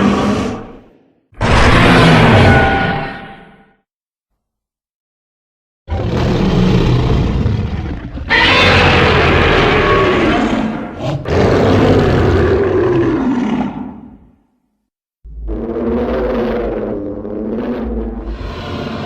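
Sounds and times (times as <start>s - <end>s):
monster roaring: 0.0s - 3.2s, 5.9s - 14.2s, 15.3s - 19.0s.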